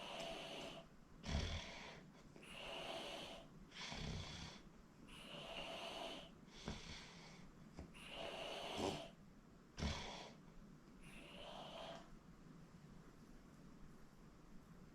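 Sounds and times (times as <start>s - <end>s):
person snoring: 8.0s - 9.1s.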